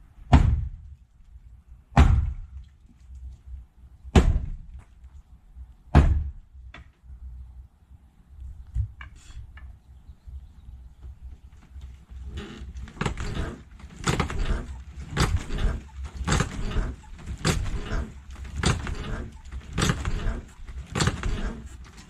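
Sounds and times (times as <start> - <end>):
heavy thuds on wood: 0.3 - 0.9, 1.9 - 2.5, 4.1 - 4.8, 5.9 - 6.9, 12.8 - 21.6.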